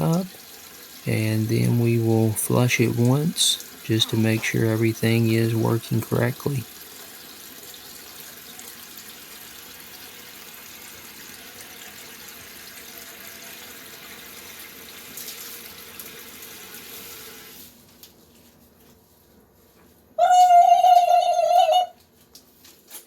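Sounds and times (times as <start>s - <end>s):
toilet tank refilling: 0.0s - 17.6s.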